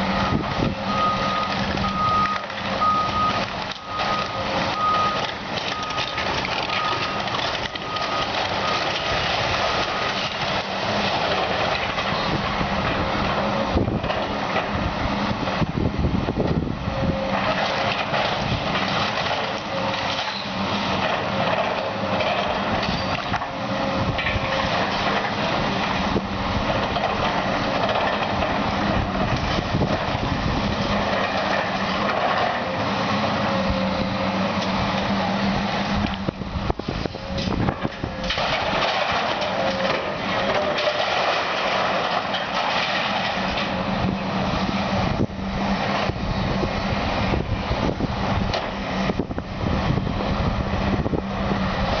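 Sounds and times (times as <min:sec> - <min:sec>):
diesel demolition machinery running: 0:00.0 - 0:52.0
debris crunching and knocking: 0:37.5 - 0:43.8.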